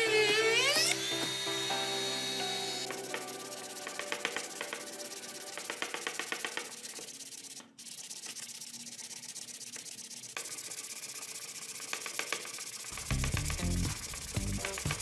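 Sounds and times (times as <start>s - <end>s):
low beat-like sound: 13.0s - 15.0s.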